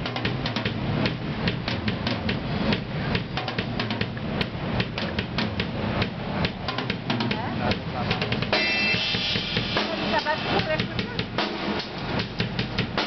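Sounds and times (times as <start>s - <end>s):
steady low hum: 0.0s - 13.0s
rapid sharp taps: 0.1s - 8.5s.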